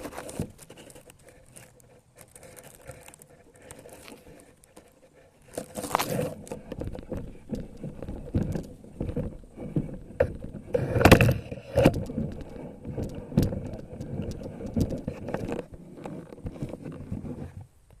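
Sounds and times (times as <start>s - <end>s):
rustling and scraping: 0.0s - 18.0s.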